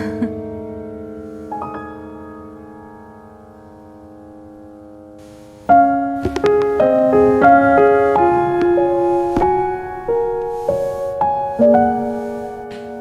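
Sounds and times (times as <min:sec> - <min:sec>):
soft piano music: 0:00.0 - 0:13.0.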